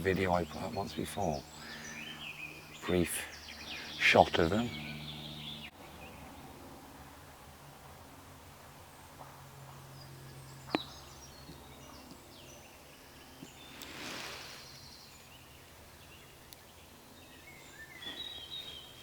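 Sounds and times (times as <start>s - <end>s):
woodland birds singing: 0.0s - 6.7s, 8.7s - 19.0s
low background hum: 0.0s - 19.0s
rustling: 13.4s - 14.9s.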